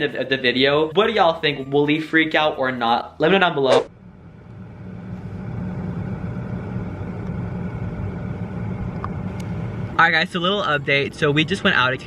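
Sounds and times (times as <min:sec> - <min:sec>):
road noise: 0:03.7 - 0:12.0
car engine hum: 0:03.9 - 0:12.0.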